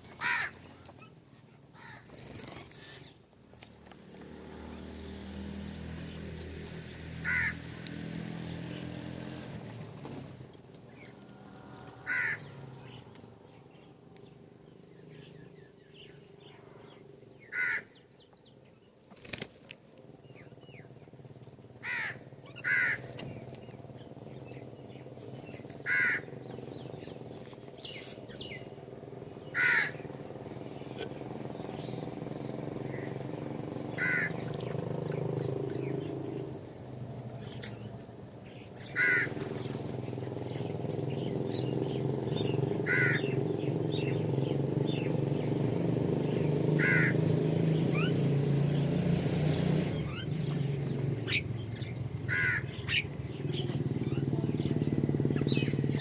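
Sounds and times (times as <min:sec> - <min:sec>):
crows cawing: 0:00.1 - 0:01.0, 0:01.7 - 0:03.0, 0:07.2 - 0:07.8, 0:10.9 - 0:13.1, 0:16.4 - 0:18.0, 0:21.8 - 0:23.3, 0:25.8 - 0:26.8, 0:29.4 - 0:30.2, 0:32.8 - 0:33.3, 0:33.9 - 0:34.6, 0:38.8 - 0:39.7, 0:42.4 - 0:44.2, 0:46.3 - 0:47.3, 0:52.2 - 0:53.1.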